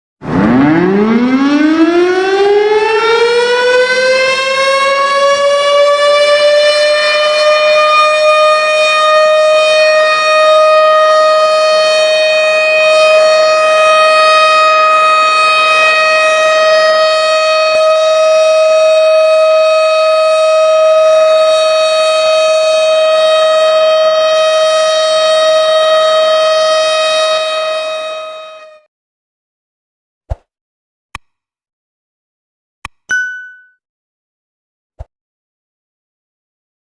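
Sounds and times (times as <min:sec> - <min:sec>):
long siren tone: 0:00.2 - 0:28.9.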